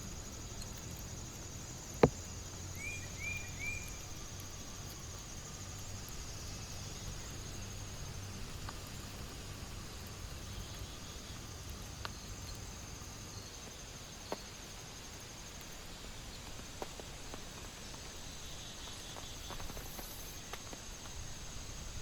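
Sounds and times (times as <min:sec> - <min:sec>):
rain falling on a tent: 0:00.0 - 0:22.0.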